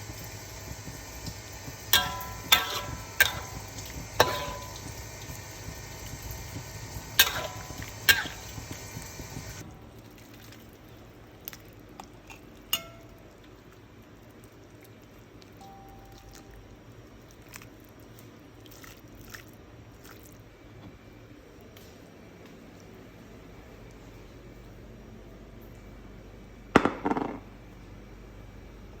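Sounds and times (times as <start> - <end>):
cooking hiss: 0.0 - 9.8
utensils clinking on cookware: 1.2 - 9.6, 12.7 - 13.2.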